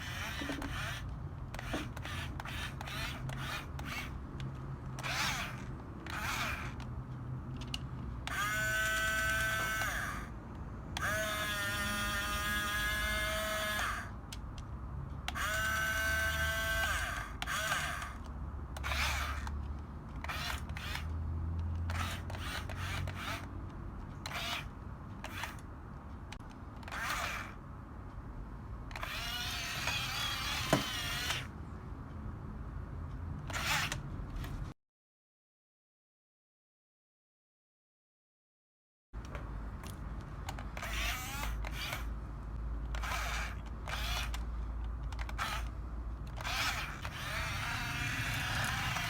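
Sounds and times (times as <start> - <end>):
toy bulldozer motors whining: 0.0 - 6.9, 7.6 - 10.4, 11.0 - 14.2, 15.3 - 21.2, 21.8 - 25.6, 26.3 - 27.6, 28.9 - 31.6, 33.5 - 34.6, 39.8 - 42.2, 42.9 - 49.0.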